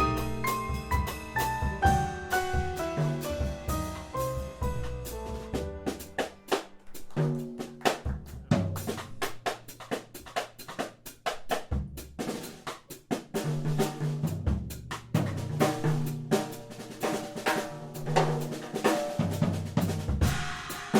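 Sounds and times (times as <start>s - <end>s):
jazz band music: 0.0s - 9.8s
drum kit strokes: 0.0s - 20.9s.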